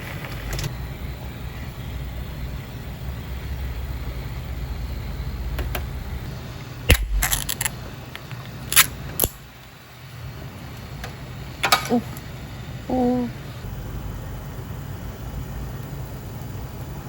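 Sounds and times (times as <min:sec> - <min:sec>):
low rumble: 0:03.1 - 0:07.7.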